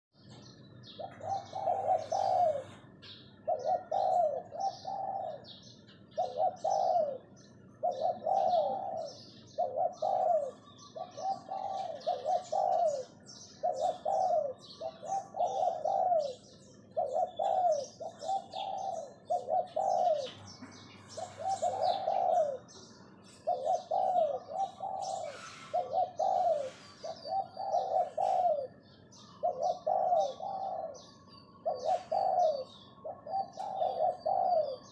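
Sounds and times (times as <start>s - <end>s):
dove cooing: 0.2s - 34.9s
small birds chirping: 0.2s - 34.9s.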